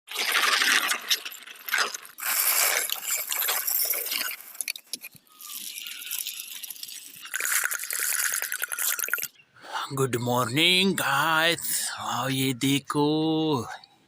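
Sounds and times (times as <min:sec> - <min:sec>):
small hard objects rattling: 0:00.1 - 0:09.3.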